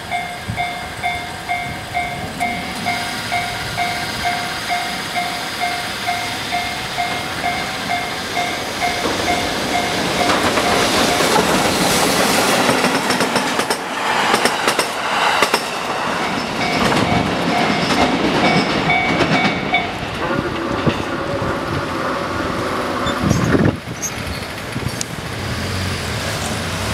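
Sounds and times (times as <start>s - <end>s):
level crossing bell ringing: 0.0s - 11.4s
train wheels clattering over rails: 0.1s - 26.9s.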